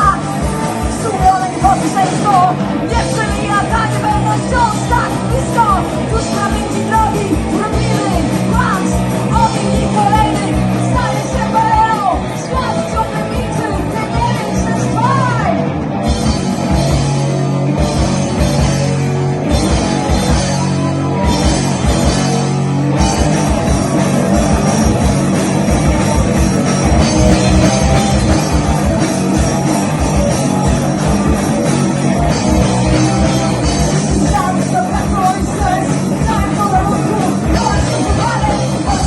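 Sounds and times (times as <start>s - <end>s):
live rock band playing: 0.0s - 39.0s
person singing: 34.1s - 39.0s.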